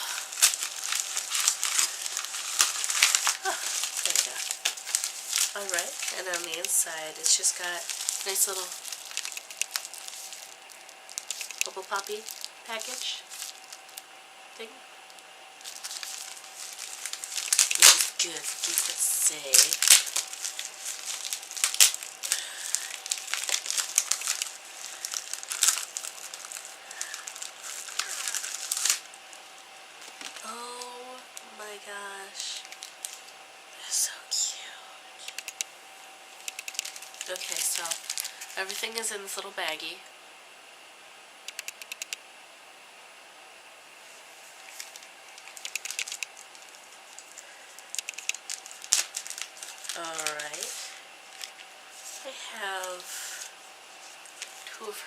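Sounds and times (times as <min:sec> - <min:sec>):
bubble wrap crinkling: 0:00.0 - 0:31.6, 0:32.2 - 0:33.4, 0:36.3 - 0:39.9, 0:44.0 - 0:55.0
small clicks: 0:35.3 - 0:35.7, 0:36.4 - 0:37.3, 0:41.5 - 0:42.2, 0:44.8 - 0:46.3, 0:48.0 - 0:48.6.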